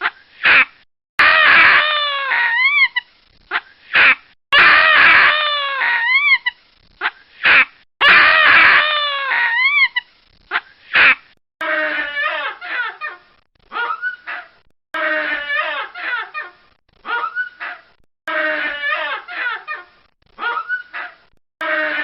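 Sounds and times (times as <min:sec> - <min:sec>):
baboon screaming: 0:01.2 - 0:03.0, 0:04.0 - 0:06.5, 0:08.0 - 0:10.0.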